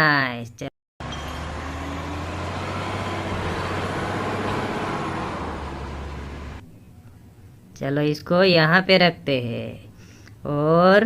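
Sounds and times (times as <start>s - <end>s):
road noise hiss: 1.0s - 6.6s
vehicle engine droning: 1.0s - 6.6s.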